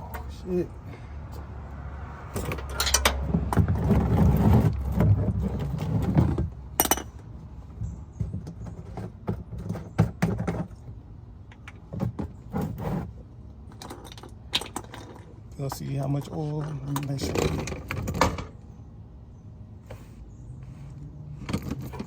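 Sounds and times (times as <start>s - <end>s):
hand tools clinking on metal: 2.4s - 3.2s.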